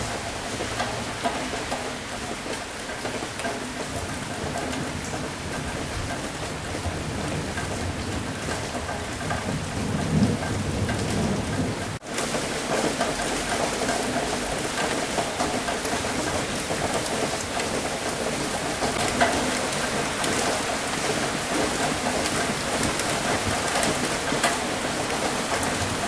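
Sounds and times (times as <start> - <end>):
steady rain falling: 0.0 - 26.0
low thunder rumble: 6.8 - 12.0.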